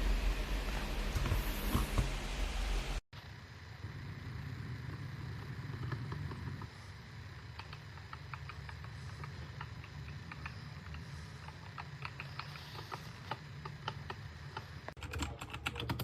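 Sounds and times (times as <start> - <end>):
low hum: 0.0 - 14.9
mechanical keyboard typing: 7.5 - 16.0.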